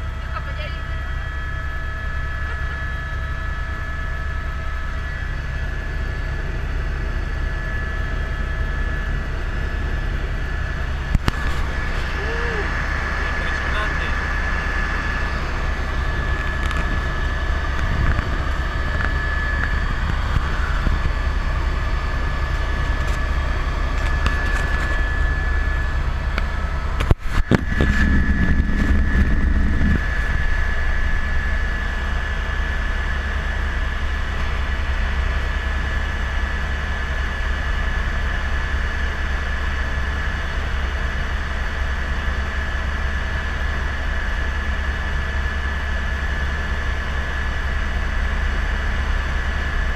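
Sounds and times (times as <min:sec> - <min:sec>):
helicopter engine and rotor drone: 0:00.0 - 0:49.9
high steady whine: 0:00.0 - 0:49.9.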